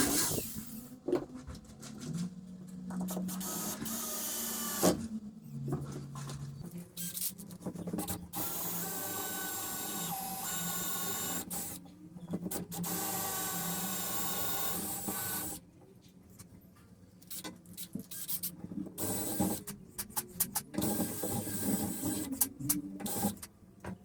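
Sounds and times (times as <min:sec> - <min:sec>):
small power tool running: 0:03.1 - 0:05.0, 0:08.4 - 0:11.7, 0:12.8 - 0:15.6.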